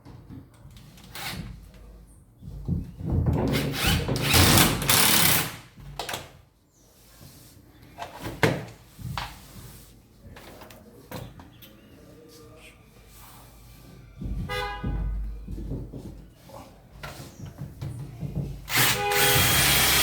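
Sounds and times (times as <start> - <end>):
power drill running: 3.8 - 5.6, 18.7 - 20.0.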